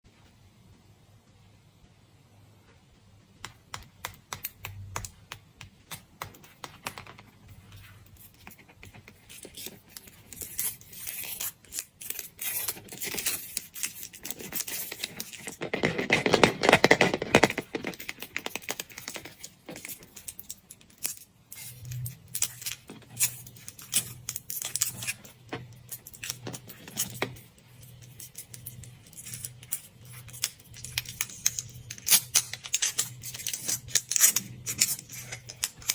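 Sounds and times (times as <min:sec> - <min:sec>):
small clicks and taps: 0:03.4 - 0:07.3
foil and plastic wrappers crinkling: 0:09.4 - 0:35.9.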